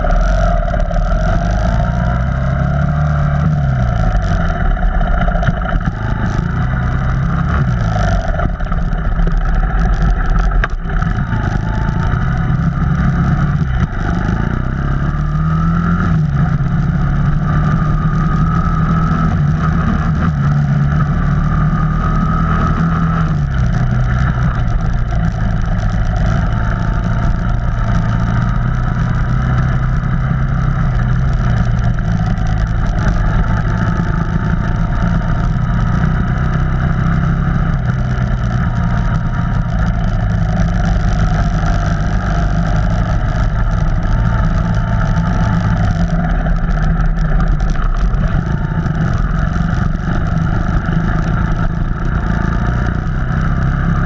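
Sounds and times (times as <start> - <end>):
off-road vehicle engine running: 0.0 - 54.0.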